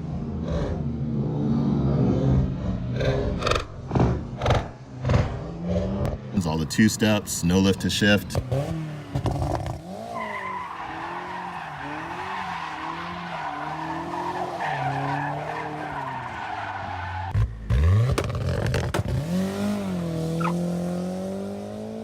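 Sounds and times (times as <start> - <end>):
turbocharged engine revving: 8.2 - 15.8, 17.3 - 22.0.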